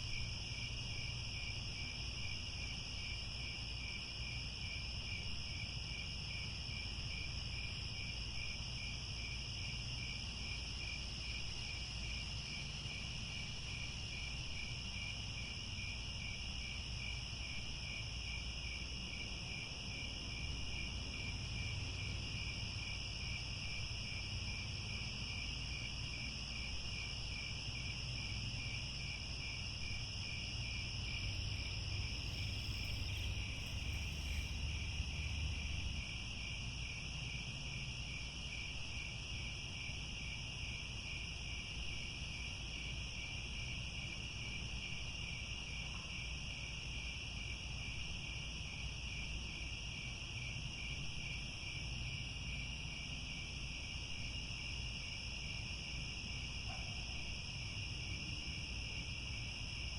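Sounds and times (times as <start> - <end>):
crickets chirping: 0.0 - 59.9
faint low rumble: 30.3 - 36.5.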